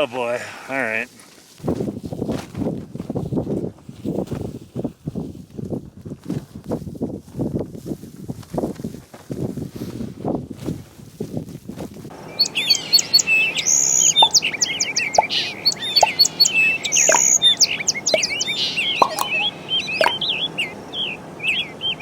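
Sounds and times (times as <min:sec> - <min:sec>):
birds chirping and trilling: 0:12.1 - 0:22.0.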